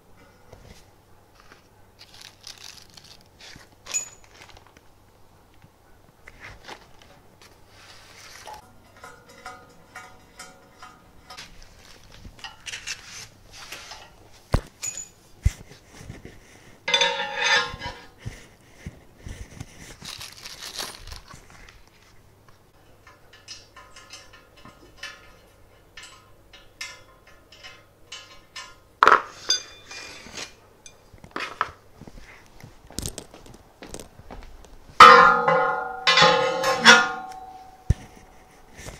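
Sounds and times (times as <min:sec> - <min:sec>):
rustling: 0:00.5 - 0:04.9, 0:06.2 - 0:08.6, 0:11.4 - 0:22.6
parts clinking and knocking: 0:03.8 - 0:04.6, 0:08.5 - 0:13.0, 0:13.8 - 0:15.2, 0:16.9 - 0:18.1, 0:22.8 - 0:31.8, 0:35.0 - 0:38.9.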